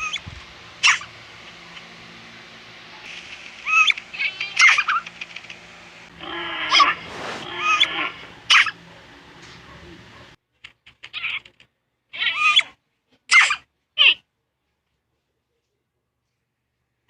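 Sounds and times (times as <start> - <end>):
animal squeaky calls: 0.0 - 1.1, 3.6 - 5.2, 6.3 - 8.8, 12.1 - 14.2.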